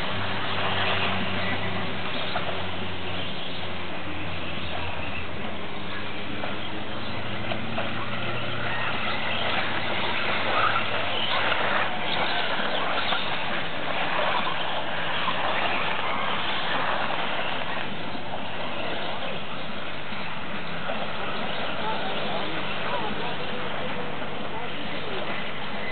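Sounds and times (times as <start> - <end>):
tyre and track noise: 0.0 - 25.9.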